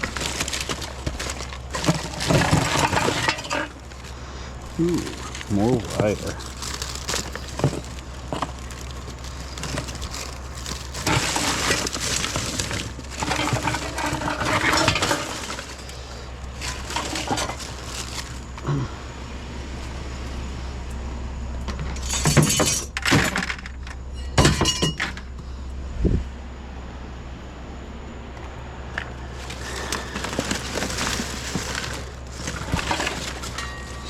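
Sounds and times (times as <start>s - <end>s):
scrap metal rattling and clinking: 0.0s - 18.6s, 21.8s - 25.4s, 29.4s - 34.0s.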